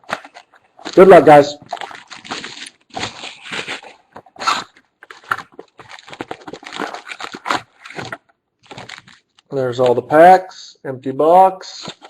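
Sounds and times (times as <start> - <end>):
cardboard rustling: 0.0 - 9.4
plastic wrap crinkling: 0.0 - 9.5.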